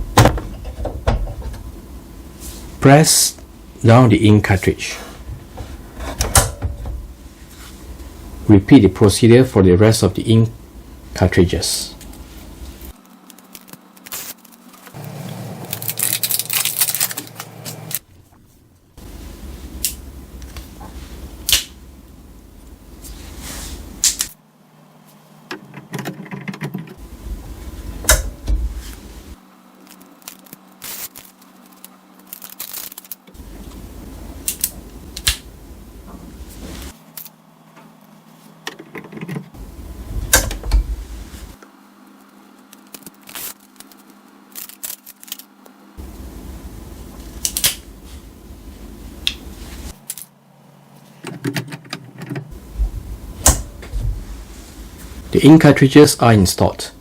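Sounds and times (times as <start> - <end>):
packaging rustling: 15.6 - 18.0.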